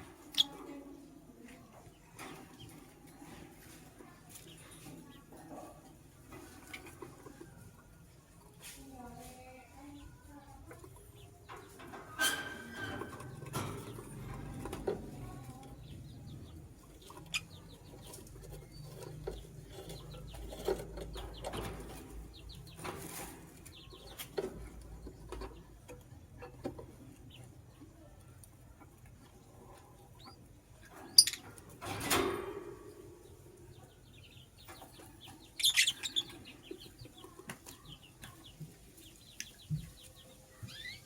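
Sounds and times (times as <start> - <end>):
bird chirping: 0.3 - 0.6, 11.1 - 26.0, 29.7 - 31.7, 32.8 - 41.0.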